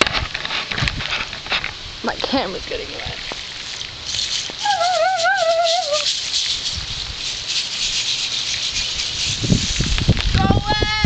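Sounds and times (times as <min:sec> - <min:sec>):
rattle shaking: 0:03.6 - 0:10.4
voice warbling: 0:04.6 - 0:06.1.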